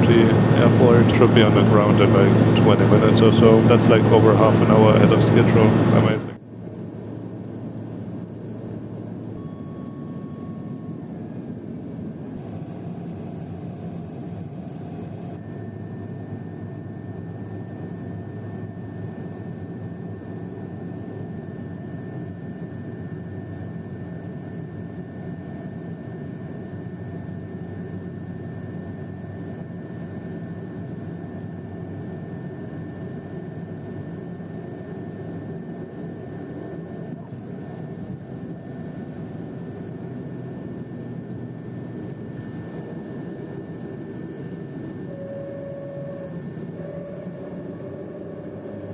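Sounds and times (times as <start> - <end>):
thin high whine: 0.0 - 6.4, 42.1 - 48.9
turboprop engine cabin drone: 0.0 - 48.9.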